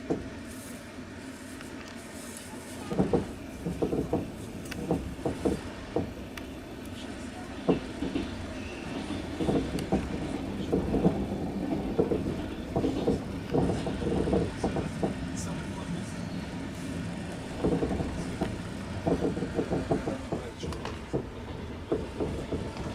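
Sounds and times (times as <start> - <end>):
train wheels clacking on rails: 2.7 - 22.9
irregular knocks: 2.9 - 6.2, 9.0 - 15.3, 17.3 - 22.9
steady rumble: 9.1 - 22.9.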